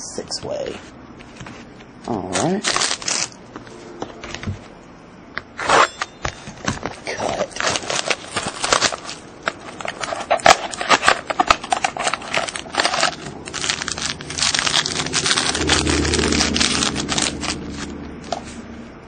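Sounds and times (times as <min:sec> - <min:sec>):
wrapper crinkling: 0:02.0 - 0:03.4, 0:06.6 - 0:18.6.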